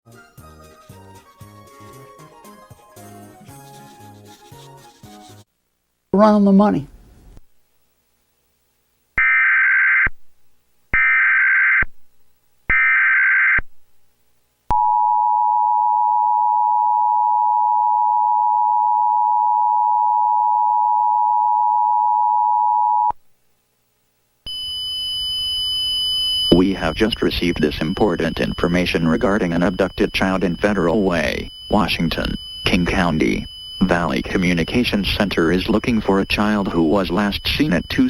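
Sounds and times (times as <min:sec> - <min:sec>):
high steady tone: 0:24.5 - 0:38.0
two-tone attention signal: 0:24.5 - 0:38.0
warbling data tone bursts: 0:24.5 - 0:38.0.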